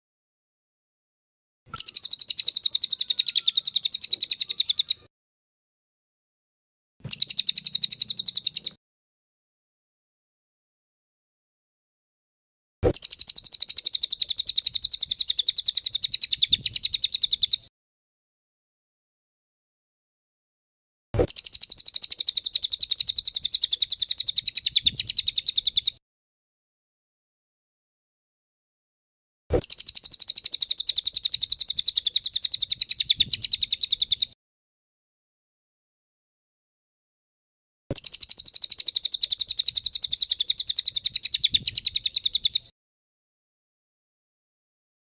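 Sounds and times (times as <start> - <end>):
songbird rapid trill: 1.7 - 5.0, 7.0 - 8.8, 12.8 - 17.6, 21.2 - 26.0, 29.6 - 34.4, 38.0 - 42.6.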